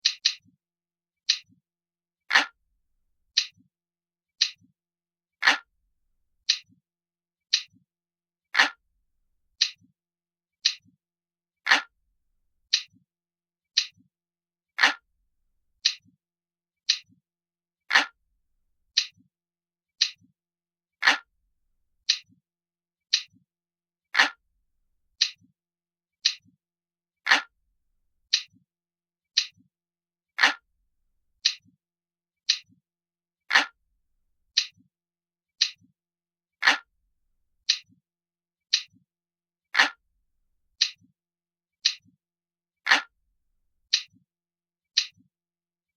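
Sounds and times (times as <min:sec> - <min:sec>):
clock ticking: 0:00.0 - 0:00.6.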